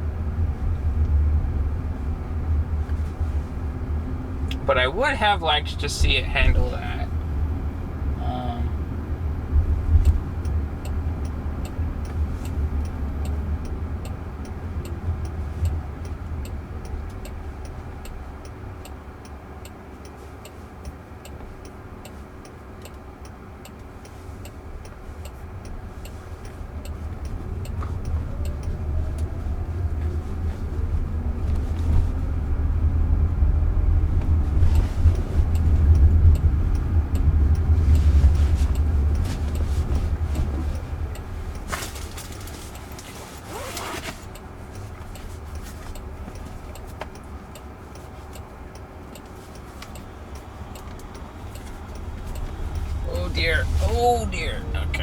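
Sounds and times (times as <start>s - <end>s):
road and tyre rumble: 0.0s - 55.0s
turn signal ticking: 0.0s - 55.0s.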